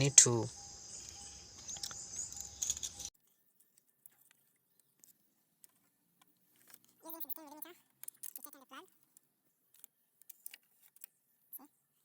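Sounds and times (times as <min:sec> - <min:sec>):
faint steady tone: 0:00.0 - 0:06.4.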